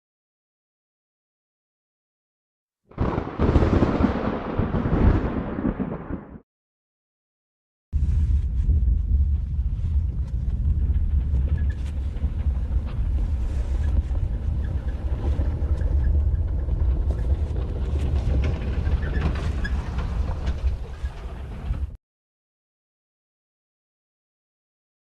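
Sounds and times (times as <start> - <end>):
crackles and clicks: 8.0 - 22.0
deep rumble: 8.0 - 22.0.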